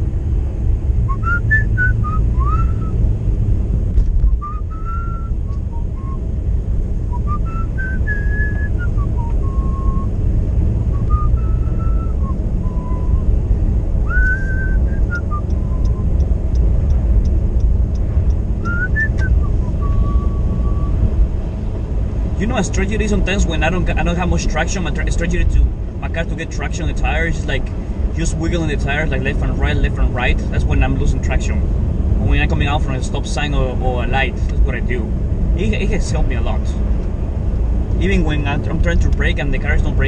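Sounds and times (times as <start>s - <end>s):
car driving low rumble: 0.0s - 40.0s
man whistling a tune: 1.1s - 3.0s, 4.3s - 6.2s, 7.1s - 10.1s, 10.9s - 13.3s, 14.1s - 16.2s, 18.6s - 21.0s
even ticks: 15.1s - 19.3s.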